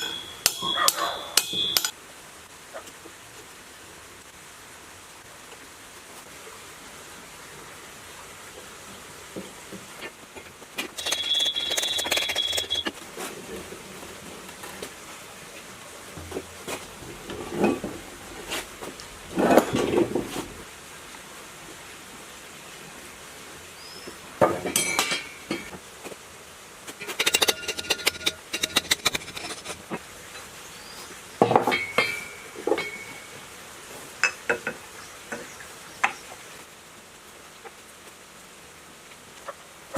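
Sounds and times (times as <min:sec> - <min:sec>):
metal tools clinking and knocking: 0:00.0 - 0:01.9, 0:24.6 - 0:25.7, 0:27.0 - 0:29.8, 0:31.6 - 0:33.3.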